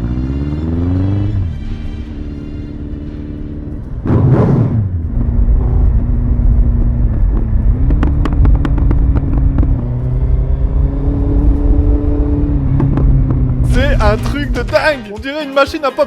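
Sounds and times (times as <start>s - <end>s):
motorcycle engine revving and idling: 0.0s - 14.8s
exhaust pops and crackles: 3.7s - 10.2s, 12.6s - 14.9s.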